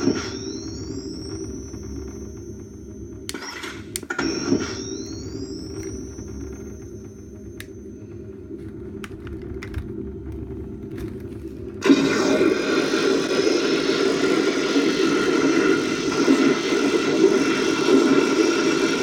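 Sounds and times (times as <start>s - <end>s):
low electronic hum: 0.0s - 19.0s.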